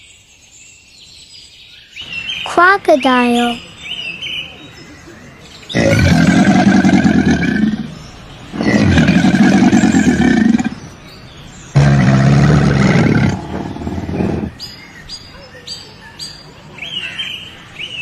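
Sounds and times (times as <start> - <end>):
crocodile bellowing: 5.7 - 10.8, 11.7 - 14.6.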